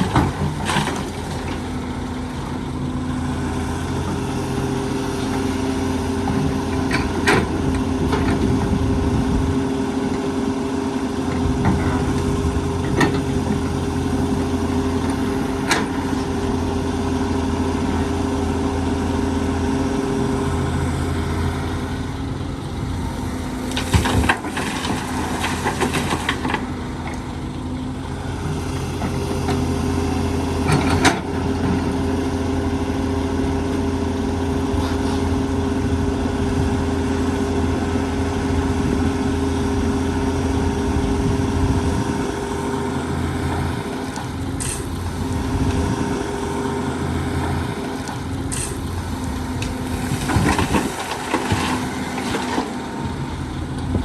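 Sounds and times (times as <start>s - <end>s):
excavator diesel engine running: 0.0s - 54.0s
soil and stones rattling into truck: 23.5s - 26.7s, 41.7s - 54.0s.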